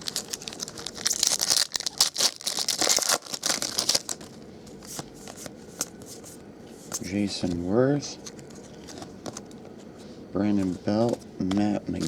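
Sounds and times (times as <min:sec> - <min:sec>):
foil wrapper tearing and crinkling: 0:00.0 - 0:04.4.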